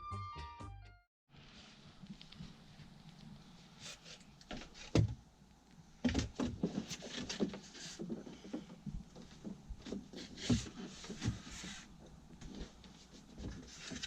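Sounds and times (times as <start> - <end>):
light knocks and rustles: 6.0 - 14.0.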